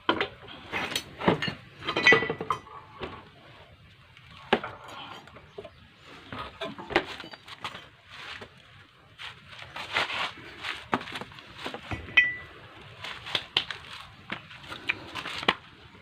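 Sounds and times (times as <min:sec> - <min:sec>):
metal parts and tools clinking: 0:00.1 - 0:03.2, 0:04.4 - 0:05.7, 0:06.5 - 0:08.0, 0:11.8 - 0:12.6.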